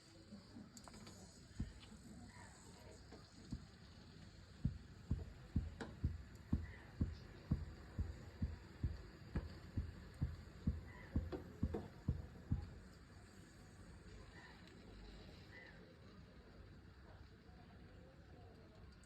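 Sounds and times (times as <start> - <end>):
soft dull thuds: 4.6 - 12.8.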